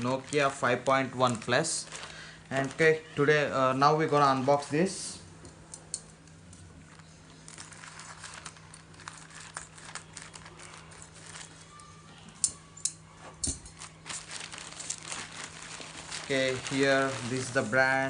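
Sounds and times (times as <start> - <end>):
packaging crinkling and clicking: 6.9 - 11.9, 13.6 - 17.6.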